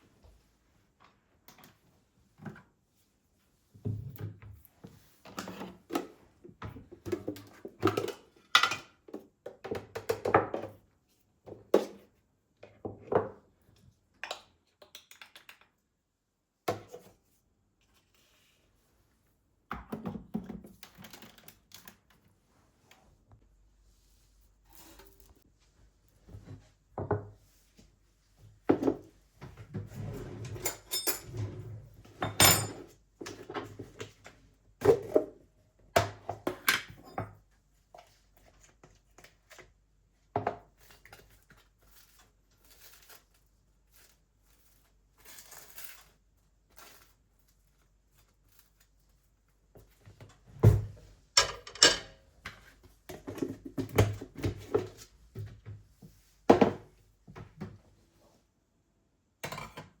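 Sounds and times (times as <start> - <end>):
dishes and utensils clattering: 30.0 - 33.4, 51.4 - 52.2.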